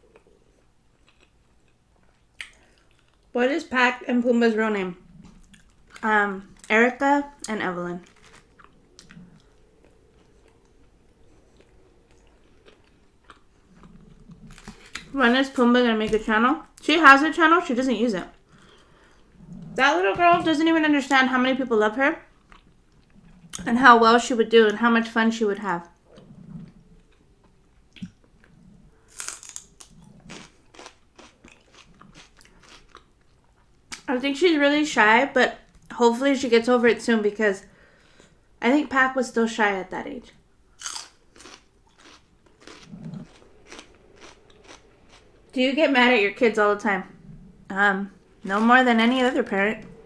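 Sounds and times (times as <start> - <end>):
soft mouth sounds: 0.0 - 3.3, 7.3 - 15.2
quiet chewing of food: 0.0 - 3.4, 5.0 - 6.7, 7.3 - 15.2, 18.2 - 19.8, 22.2 - 23.7, 25.8 - 34.1, 37.6 - 38.5, 40.3 - 45.6, 47.0 - 50.0.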